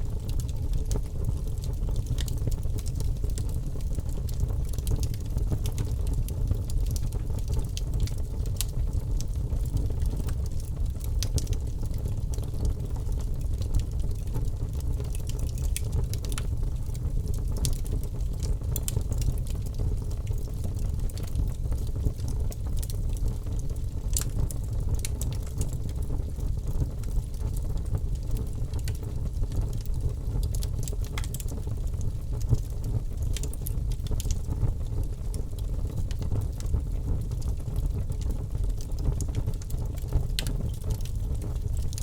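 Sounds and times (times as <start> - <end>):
wood fire crackling: 0.0 - 42.0.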